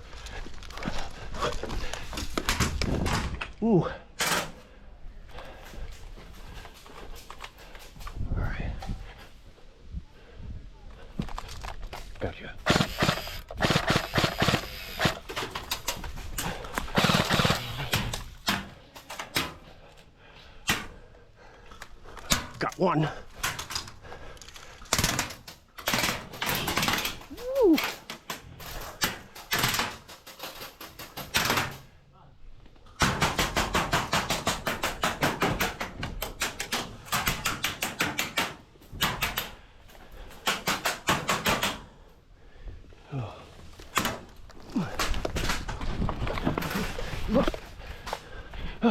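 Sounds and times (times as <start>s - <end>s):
airsoft gun firing full auto: 12.6s - 15.4s, 16.9s - 18.2s
airsoft guns firing: 12.6s - 15.7s, 16.8s - 19.6s, 33.0s - 39.6s, 40.4s - 41.9s.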